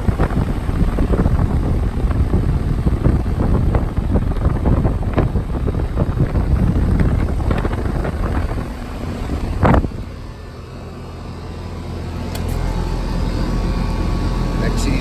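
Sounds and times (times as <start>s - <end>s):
wind buffeting microphone: 0.0s - 10.6s
air conditioner unit rumbling: 0.0s - 15.0s.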